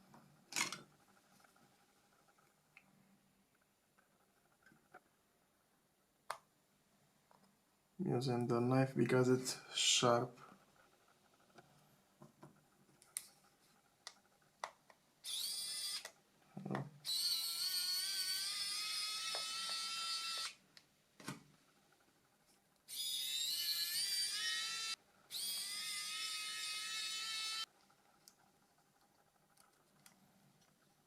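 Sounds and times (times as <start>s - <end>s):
small electric tool motor: 15.2s - 16.2s, 17.0s - 20.6s, 22.9s - 27.7s.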